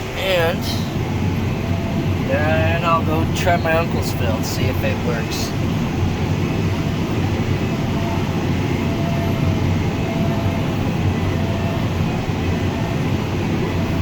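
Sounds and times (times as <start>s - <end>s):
tractor and hay baler running: 2.2s - 5.6s.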